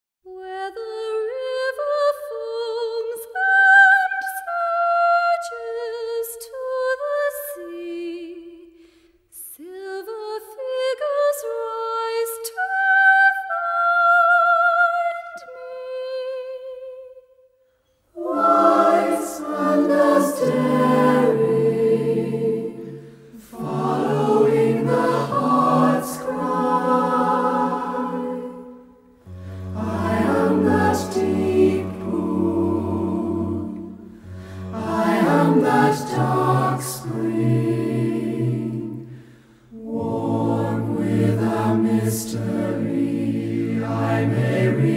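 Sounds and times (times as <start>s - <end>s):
choir singing: 18.1s - 44.9s.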